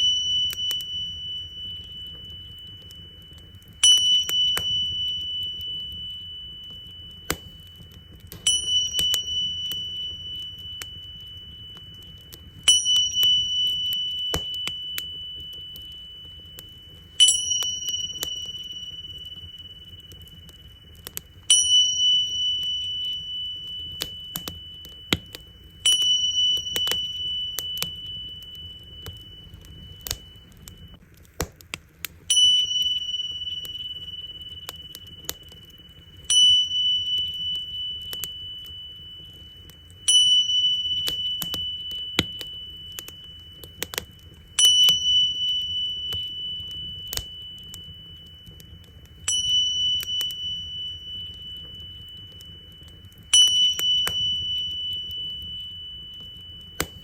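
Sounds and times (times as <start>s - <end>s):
small cymbals ringing: 0.0s - 31.0s, 32.2s - 57.0s
wood fire crackling: 0.0s - 57.0s.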